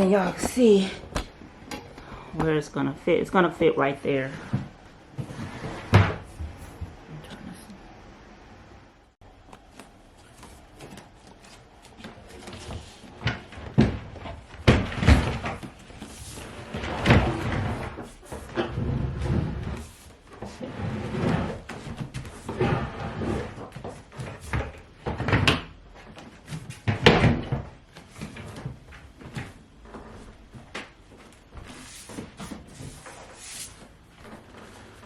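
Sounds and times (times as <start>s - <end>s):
wooden furniture knocks and scrapes: 4.4s - 7.0s, 12.3s - 35.0s.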